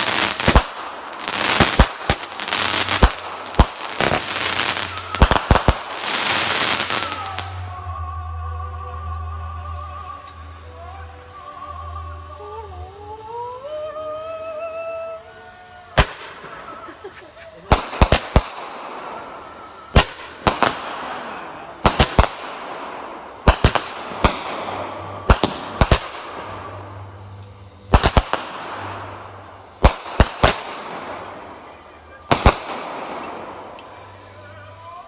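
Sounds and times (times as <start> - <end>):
fireworks bangs: 0.0 - 7.7, 17.7 - 34.5
fireworks crackle: 0.0 - 8.1, 15.8 - 35.0
music: 0.0 - 35.0.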